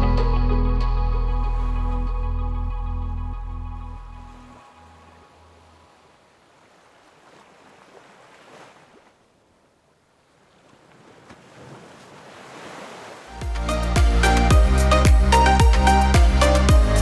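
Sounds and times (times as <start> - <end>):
waves breaking on sandy shore: 4.6 - 14.4.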